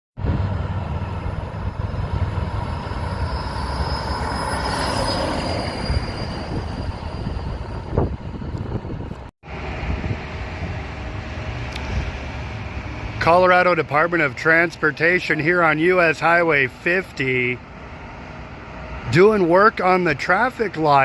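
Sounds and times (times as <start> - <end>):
traffic noise: 0.2 - 21.0
train rumbling past: 0.2 - 21.0
high wheel squeal: 0.7 - 8.8.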